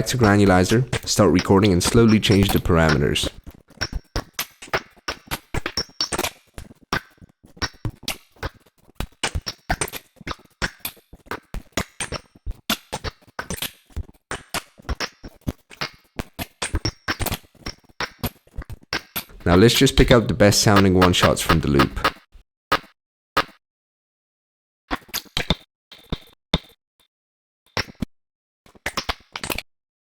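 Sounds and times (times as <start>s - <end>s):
glitchy electronic percussion: 0.0s - 3.3s.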